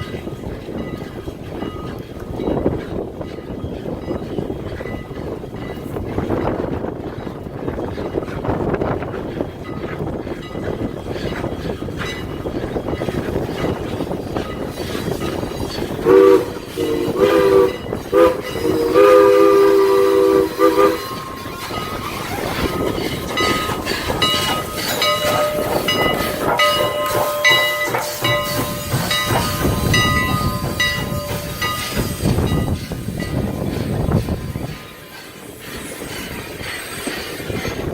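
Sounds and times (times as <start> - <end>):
wheels clicking over rail joints: 0.0 - 37.9
steam whistle blasts: 16.0 - 21.8.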